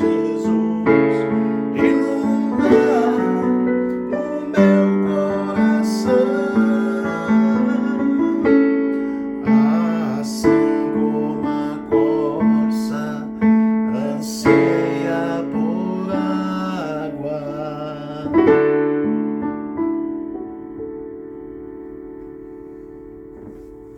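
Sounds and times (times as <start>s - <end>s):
slow piano chords: 0.0s - 23.9s.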